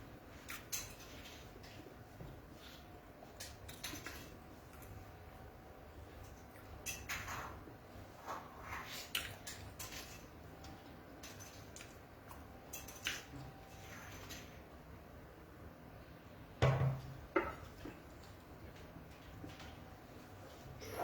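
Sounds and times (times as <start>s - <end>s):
soft wet chewing: 1.7s - 5.4s, 6.1s - 6.9s, 8.9s - 9.8s, 10.6s - 13.9s.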